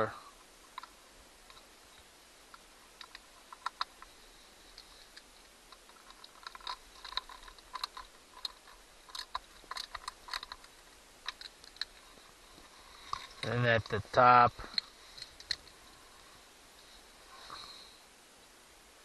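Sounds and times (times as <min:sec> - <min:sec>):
plastic parts handled: 0:04.7 - 0:14.0.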